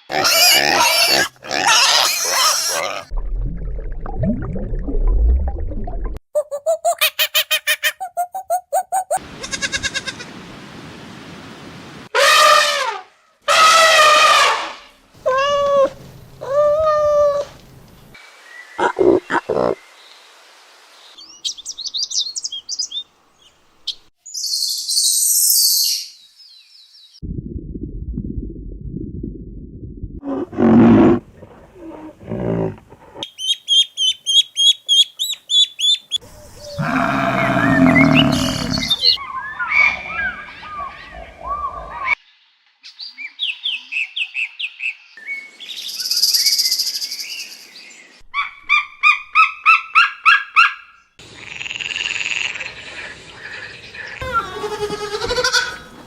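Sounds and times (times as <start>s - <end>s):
farm animal bleating: 9.4s - 10.3s, 36.8s - 39.1s, 54.2s - 56.0s
low rumble: 27.2s - 30.2s
farm animal calls: 35.6s - 41.2s.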